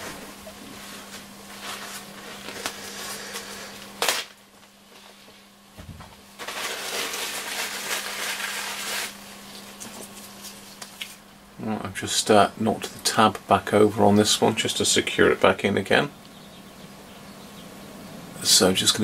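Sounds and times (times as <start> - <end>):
rubbing or scraping hiss: 0.0 - 4.1, 6.4 - 10.8
faint steady hum: 0.0 - 19.0.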